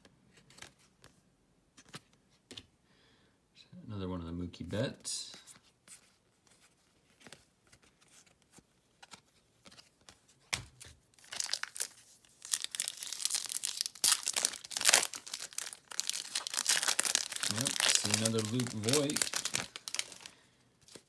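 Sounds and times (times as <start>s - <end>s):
card pack wrapper tearing: 11.2s - 21.0s.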